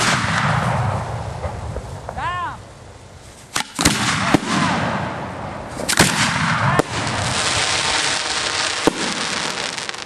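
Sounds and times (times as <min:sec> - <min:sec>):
continuous hiss: 0:00.0 - 0:10.0
fireworks bursting: 0:00.0 - 0:10.0.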